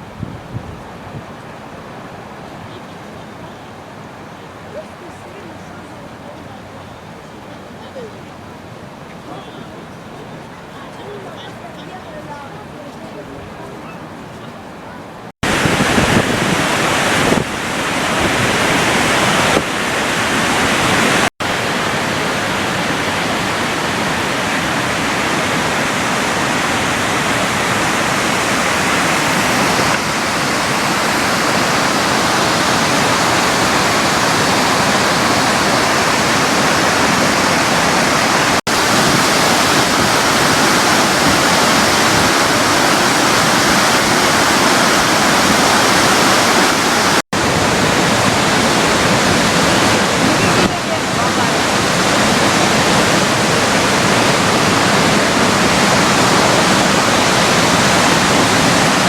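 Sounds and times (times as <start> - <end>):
waterfall rushing: 15.0 - 59.0.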